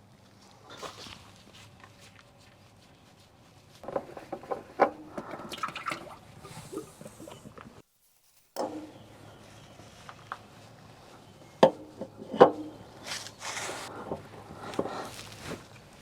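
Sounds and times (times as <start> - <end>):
short rustle: 0.3 - 4.2, 12.9 - 14.0, 14.6 - 16.0
tools knocking and clicking: 8.6 - 8.9, 11.6 - 12.8.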